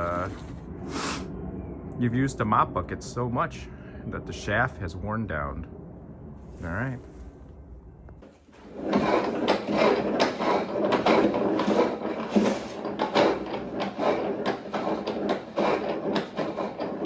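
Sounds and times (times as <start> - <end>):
spin mop bucket clattering: 8.5 - 17.0.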